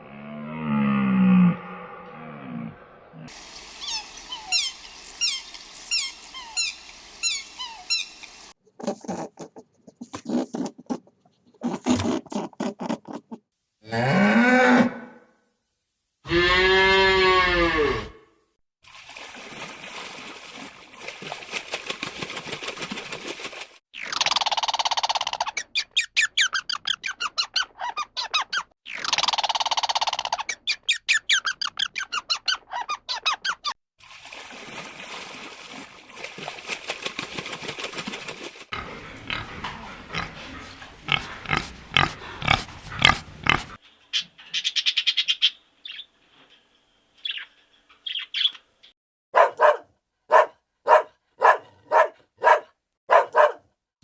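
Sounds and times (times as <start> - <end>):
short pulsed animal calls: 3.4 - 8.4
animal squealing cries: 3.8 - 8.2.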